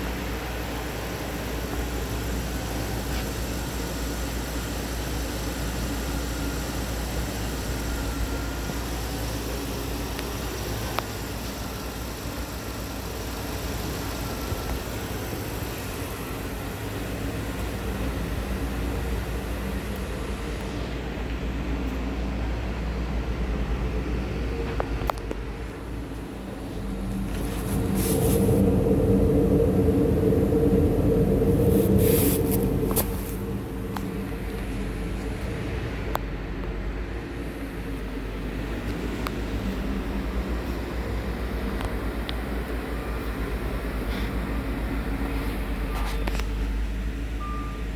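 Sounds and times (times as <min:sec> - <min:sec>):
car engine idling: 0:00.0 - 0:47.9
car engine running: 0:23.2 - 0:44.0.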